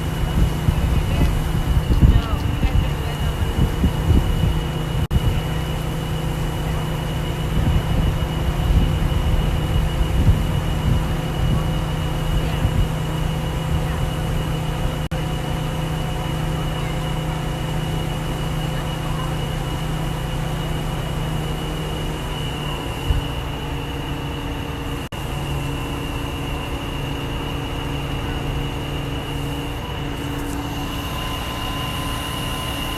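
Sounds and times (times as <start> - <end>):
wind on microphone: 0.0 - 5.7, 7.1 - 15.1
diesel engine running: 0.0 - 32.9
high whine: 0.0 - 32.9.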